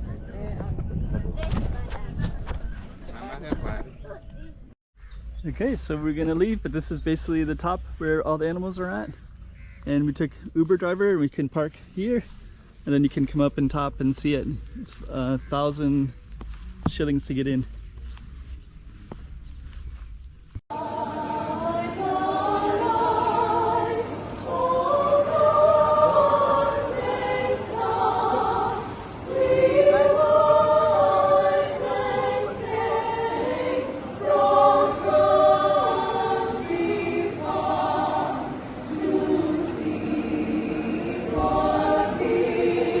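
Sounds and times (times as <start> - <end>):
choir singing in harmony: 20.7 - 43.0.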